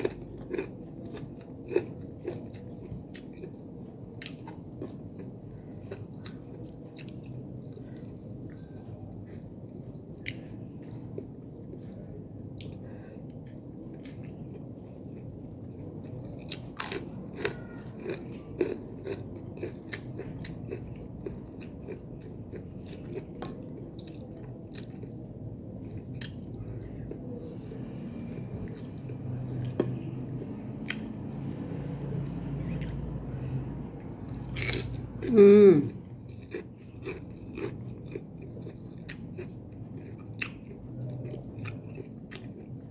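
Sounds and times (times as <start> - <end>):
chewing and crunching food: 0.0 - 42.9.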